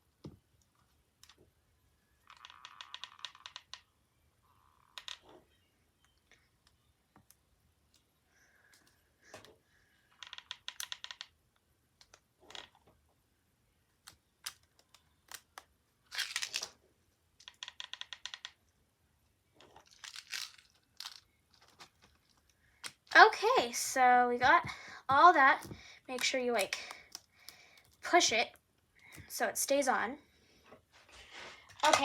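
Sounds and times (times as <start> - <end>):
small clicks: 10.1 - 11.4
wrapper crinkling: 16.1 - 16.7, 19.7 - 22.4.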